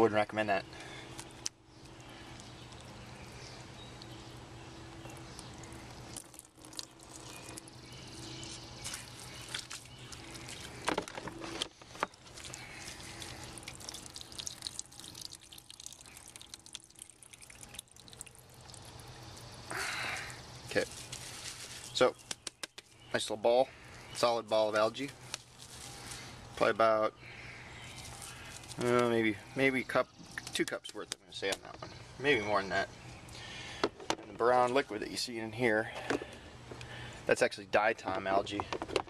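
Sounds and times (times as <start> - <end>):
steady low hum: 0.0 - 39.0
water dripping and trickling: 1.8 - 10.9, 12.1 - 22.1, 27.9 - 29.1
small splashes: 5.3 - 10.9, 12.0 - 22.4.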